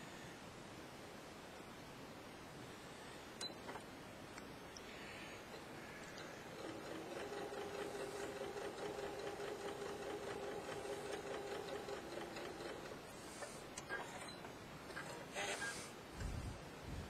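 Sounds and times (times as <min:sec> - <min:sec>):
sewing machine running: 0:06.5 - 0:14.3.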